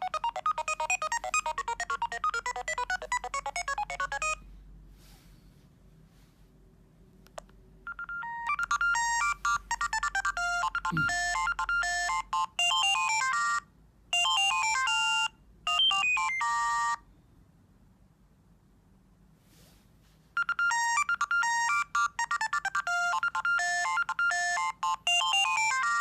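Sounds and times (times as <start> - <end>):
mobile phone ringtone beeping tune: 0.0 - 4.4, 7.9 - 17.0, 20.4 - 26.0.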